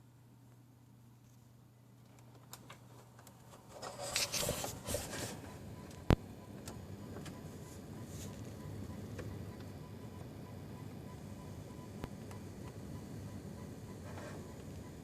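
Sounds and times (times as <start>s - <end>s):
low steady hum: 0.0s - 15.0s
electronic clicks and crackling: 2.0s - 10.3s.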